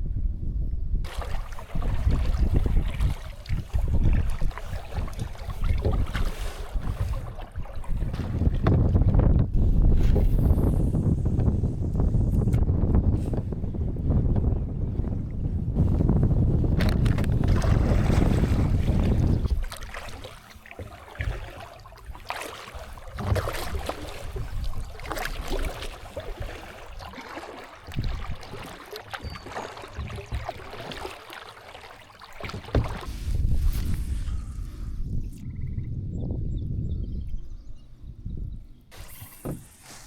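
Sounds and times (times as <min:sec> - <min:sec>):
wind buffeting microphone: 0:00.0 - 0:20.5, 0:21.1 - 0:31.1, 0:32.4 - 0:39.7
water splashes: 0:01.0 - 0:10.9, 0:16.5 - 0:34.7
knocks against kayak: 0:08.1 - 0:09.5, 0:16.7 - 0:20.1, 0:32.4 - 0:33.2, 0:39.2 - 0:40.0.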